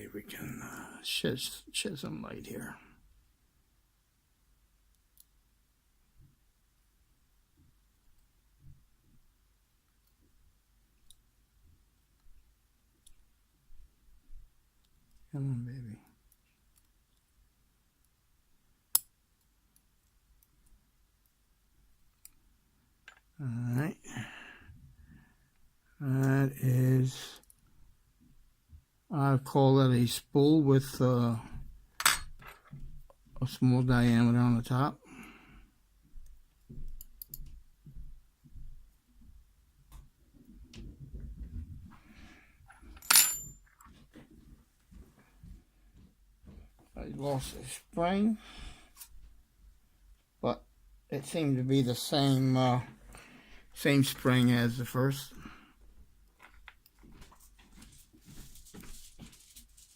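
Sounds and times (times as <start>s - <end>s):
light ticks of lock parts: 36.9s - 37.6s
metal part clinking on hard surface: 42.9s - 43.7s.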